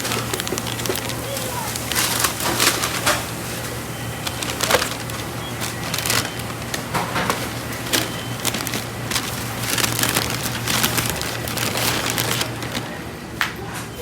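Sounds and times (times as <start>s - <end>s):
clatter and knocks: 4.2s - 12.9s.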